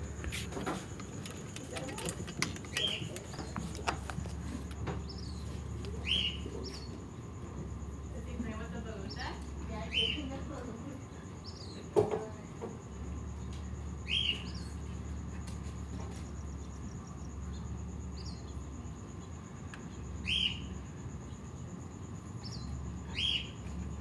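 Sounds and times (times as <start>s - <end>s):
low background hum: 0.0s - 24.0s
bird chirping: 0.7s - 7.0s, 9.0s - 10.4s, 11.4s - 11.8s, 14.0s - 14.8s, 20.2s - 20.7s, 22.4s - 23.6s.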